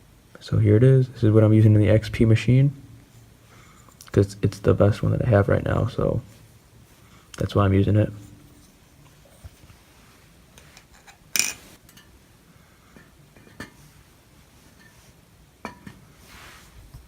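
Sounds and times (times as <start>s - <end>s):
soft rustle: 3.0s - 11.8s, 13.8s - 15.2s, 16.0s - 17.0s
short scrape: 16.2s - 16.8s.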